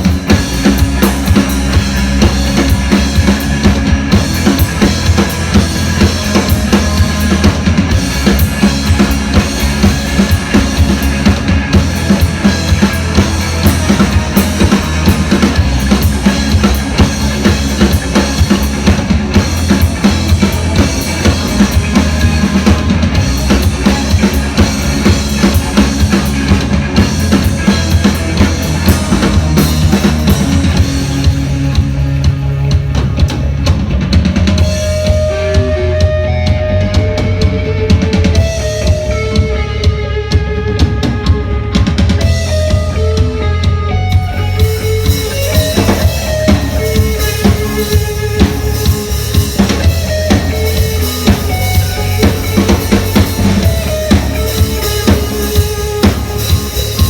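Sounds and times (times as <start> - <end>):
drum kit beat: 0.0 - 57.0
heavy bass: 0.0 - 57.0.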